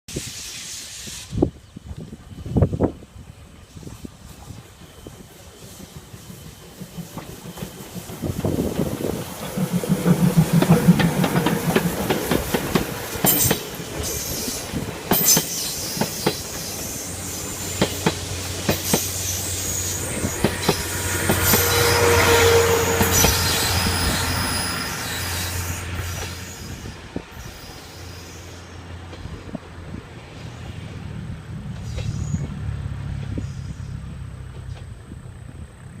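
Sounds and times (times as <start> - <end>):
train wheels rumbling on rails: 0.2 - 36.0
wheels clacking over rail joints: 5.6 - 26.7.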